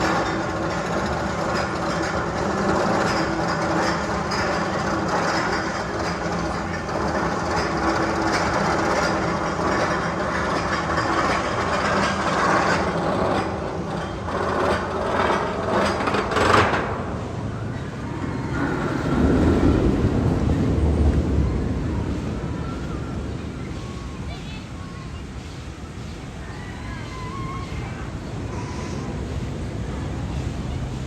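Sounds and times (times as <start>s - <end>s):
low rumble: 0.0s - 24.2s
roller coaster rattling on track: 0.0s - 31.0s.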